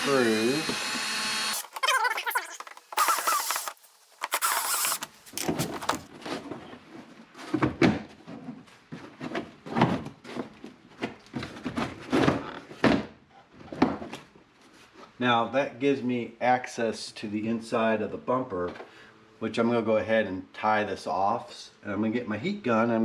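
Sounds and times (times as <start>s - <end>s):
cordless drill spinning: 1.0s - 6.1s
plastic parts knocking and rattling: 1.6s - 6.1s.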